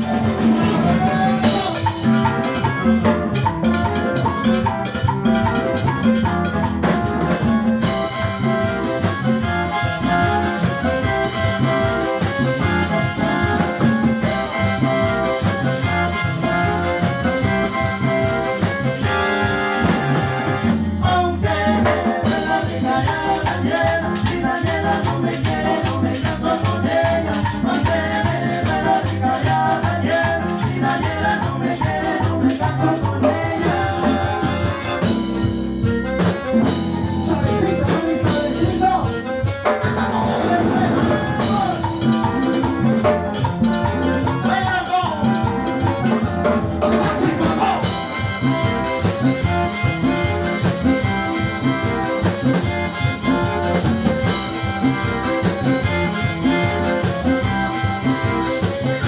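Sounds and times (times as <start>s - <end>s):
person singing: 0.0s - 2.6s, 21.0s - 35.2s, 37.2s - 42.7s, 44.0s - 48.2s
salsa band playing: 0.0s - 59.0s.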